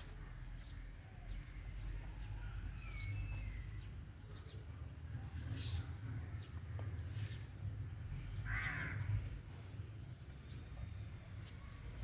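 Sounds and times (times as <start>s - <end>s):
birds chirping and calling: 0.0s - 4.7s.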